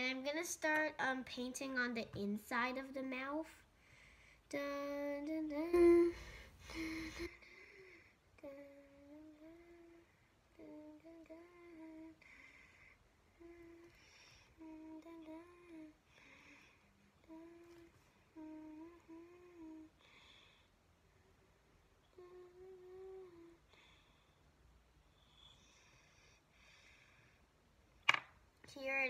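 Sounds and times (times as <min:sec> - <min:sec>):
child humming softly: 0:04.5 - 0:20.6, 0:22.0 - 0:24.3.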